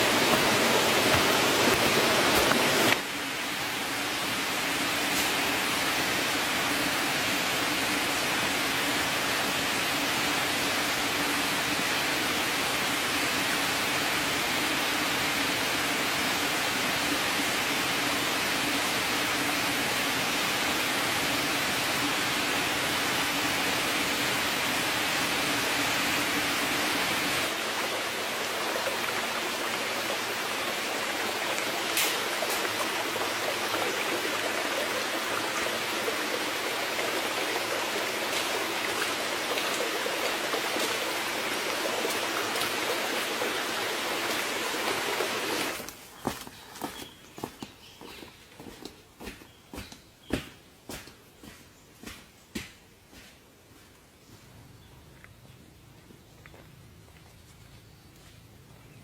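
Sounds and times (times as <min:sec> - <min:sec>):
steady rushing noise: 0:00.0 - 0:03.2.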